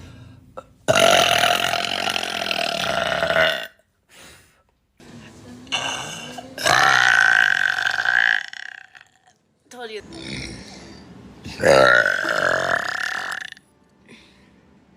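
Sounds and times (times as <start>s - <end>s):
girl burping: 0.6s - 3.8s, 5.7s - 9.2s, 11.5s - 13.6s.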